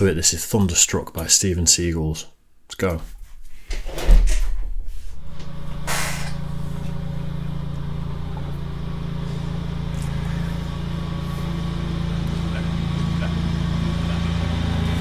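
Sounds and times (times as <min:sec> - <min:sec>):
engine idling hum: 0:04.3 - 0:15.0.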